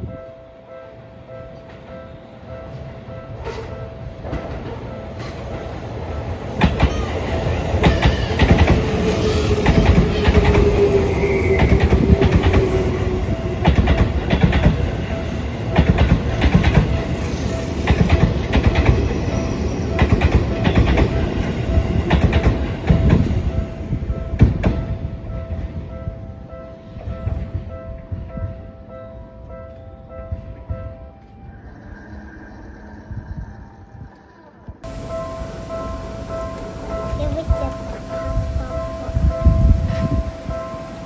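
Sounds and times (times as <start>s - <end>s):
train wheels clattering over rail joints: 6.6s - 23.4s
level crossing bell ringing: 34.8s - 41.0s
train motor whine: 34.8s - 41.0s.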